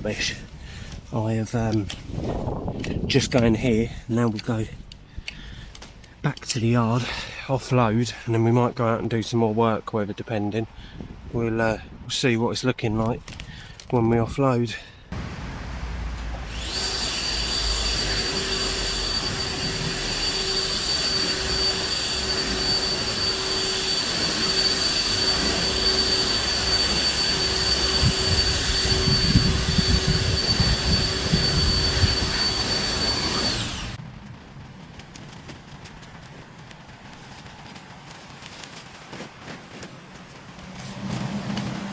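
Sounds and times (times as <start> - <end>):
leaf blower whining: 16.2 - 34.0, 37.2 - 41.9.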